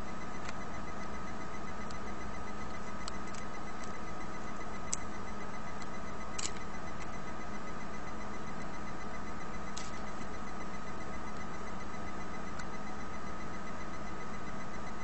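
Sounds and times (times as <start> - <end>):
electrical hum and hiss: 0.0 - 15.0
small parts clicking and tapping: 0.4 - 0.6, 1.8 - 4.0, 4.8 - 5.1, 5.8 - 7.2, 9.7 - 10.2, 12.5 - 12.7.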